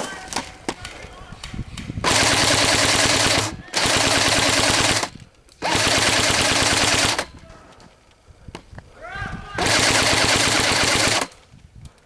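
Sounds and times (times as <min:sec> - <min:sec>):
airsoft rifle automatic fire: 0:02.0 - 0:07.4, 0:09.6 - 0:11.4.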